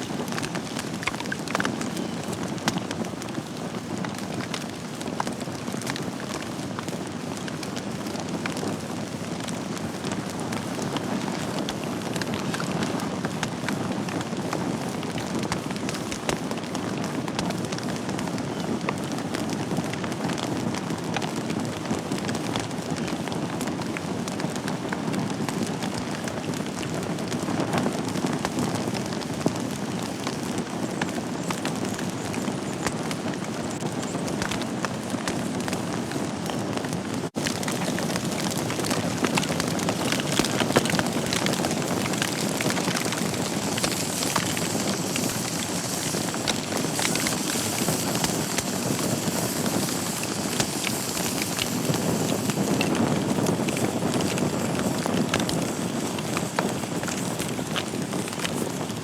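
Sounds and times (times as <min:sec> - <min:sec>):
logs crackling and popping: 0:00.0 - 0:59.0
fire hissing: 0:22.0 - 0:59.0.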